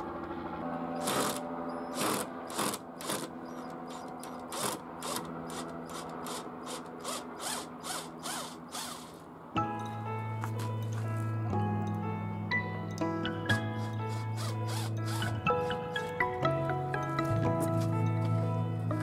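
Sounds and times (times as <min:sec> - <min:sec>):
woodworking tool clicking strokes: 0:01.0 - 0:09.2, 0:13.5 - 0:16.1.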